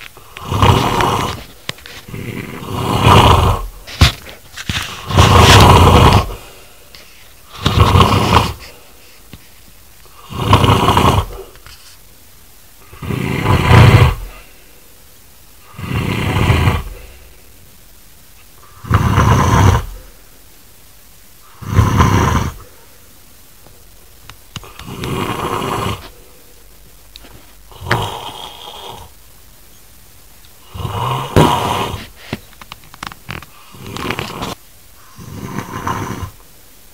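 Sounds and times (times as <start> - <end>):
man snoring loudly: 0.2 - 3.9, 4.9 - 6.6, 7.4 - 8.8, 10.1 - 11.5, 12.8 - 14.5, 15.6 - 17.2, 18.6 - 20.1, 21.4 - 22.6, 24.6 - 26.2, 27.7 - 29.2, 30.6 - 32.1, 33.5 - 36.4.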